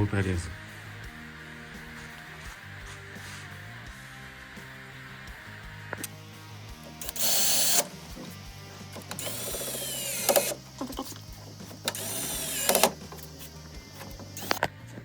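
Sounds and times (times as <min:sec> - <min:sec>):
background music: 0:00.0 - 0:15.0
sharp clicks: 0:06.8 - 0:14.7
metal fitting scraping in groove: 0:06.9 - 0:14.7.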